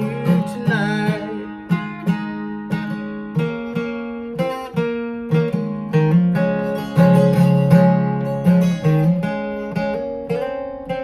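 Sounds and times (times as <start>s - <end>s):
acoustic guitar strumming: 0.0s - 11.0s.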